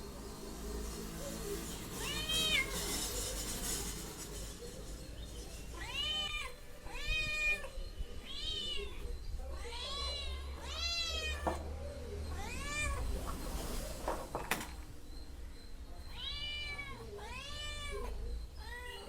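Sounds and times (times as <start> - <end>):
cat meowing: 5.8 - 11.6, 12.3 - 13.2, 16.1 - 19.0.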